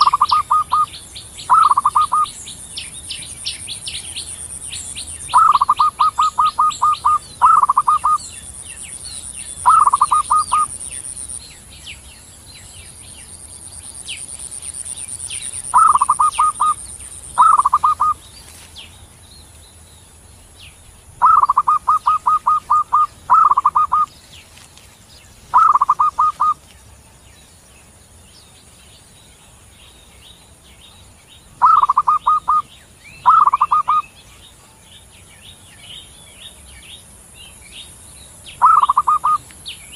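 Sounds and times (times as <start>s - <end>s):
dove cooing: 0.0s - 0.9s, 1.5s - 2.3s, 5.3s - 8.2s, 9.6s - 10.8s, 15.7s - 18.2s, 21.2s - 24.1s, 25.5s - 26.6s, 31.6s - 32.6s, 33.2s - 34.0s, 38.6s - 39.4s
faint high chirping: 0.0s - 24.7s, 25.3s - 39.9s.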